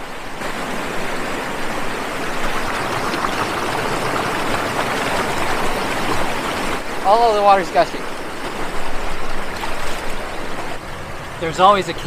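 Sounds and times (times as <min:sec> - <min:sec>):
water rushing down waterfall: 0:00.0 - 0:12.0.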